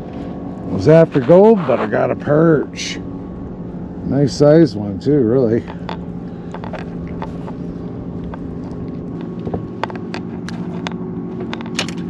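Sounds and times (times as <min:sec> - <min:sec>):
boat motor idling: 0:00.0 - 0:12.0
sharp clicks and knocks: 0:05.6 - 0:07.6, 0:08.2 - 0:12.0.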